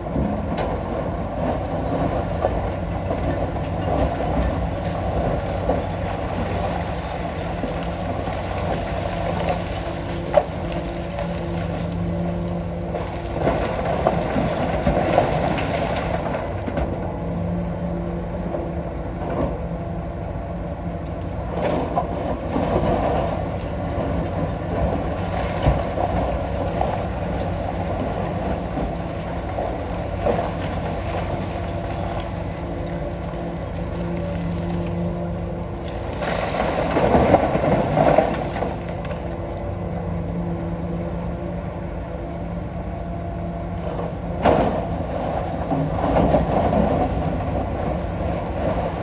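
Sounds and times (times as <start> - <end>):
excavator diesel engine: 0.0 - 49.0.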